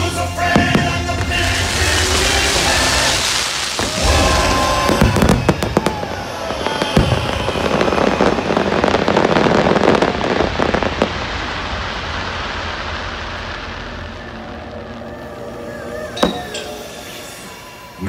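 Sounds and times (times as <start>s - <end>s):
fireworks bangs: 0.0s - 18.0s
fireworks crackling: 0.0s - 18.0s.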